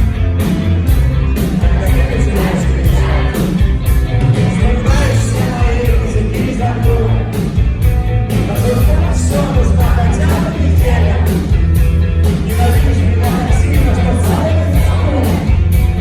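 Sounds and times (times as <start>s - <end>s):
punk rock band playing: 0.0s - 16.0s
person singing: 1.6s - 7.4s, 8.3s - 11.5s, 12.5s - 15.8s.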